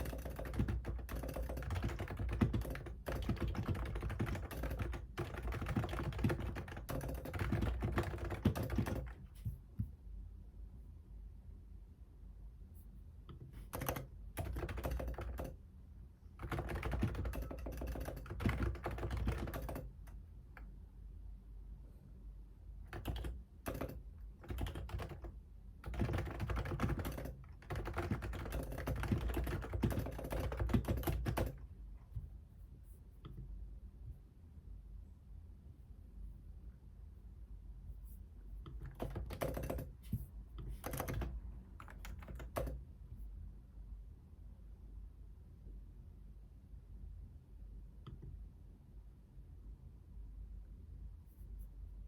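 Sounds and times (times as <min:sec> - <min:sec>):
typing on computer keyboard: 0:00.0 - 0:09.5, 0:13.3 - 0:15.6, 0:16.4 - 0:20.7, 0:22.8 - 0:31.6, 0:38.6 - 0:42.8.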